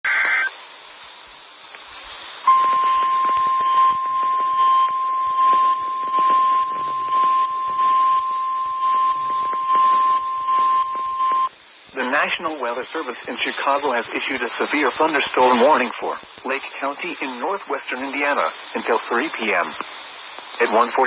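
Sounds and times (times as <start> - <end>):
radio hiss and crackle: 0.0 - 21.0
steady alarm tone: 2.4 - 11.5.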